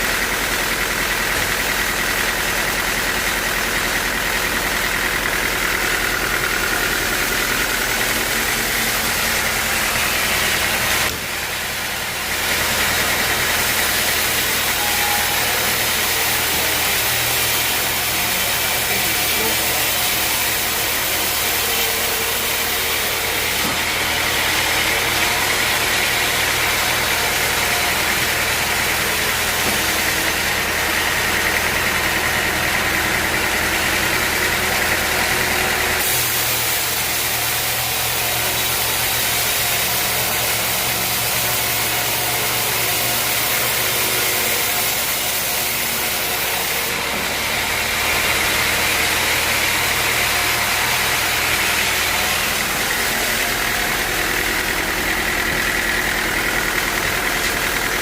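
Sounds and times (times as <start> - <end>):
sawmill engine hum: 0.0 - 58.0.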